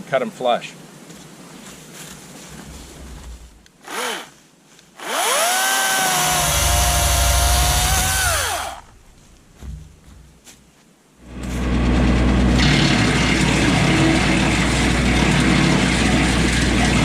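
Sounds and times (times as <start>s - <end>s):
saw motor whining: 3.8s - 4.3s, 5.0s - 9.0s.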